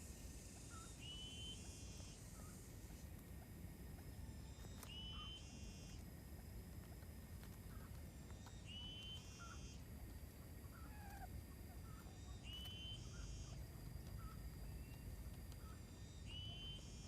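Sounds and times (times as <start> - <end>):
small birds chirping: 0.0 - 17.0
quail lure call: 10.6 - 15.0.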